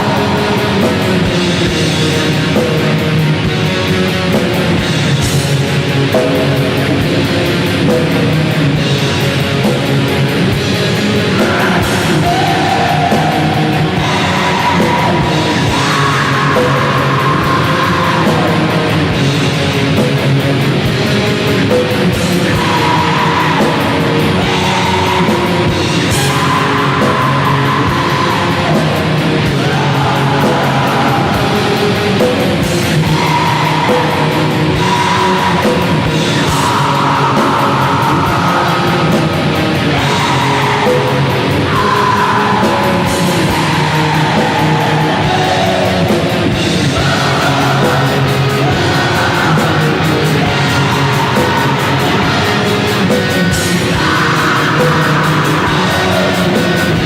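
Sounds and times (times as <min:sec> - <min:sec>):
distorted guitar: 0:00.0 - 0:57.0
drums: 0:00.0 - 0:57.0.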